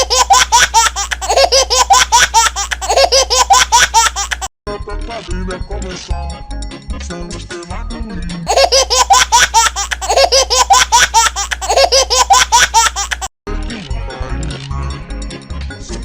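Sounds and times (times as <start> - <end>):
high-pitched cartoon laughter: 0.0 - 4.5, 8.4 - 13.3
music: 4.7 - 8.5, 13.5 - 16.0.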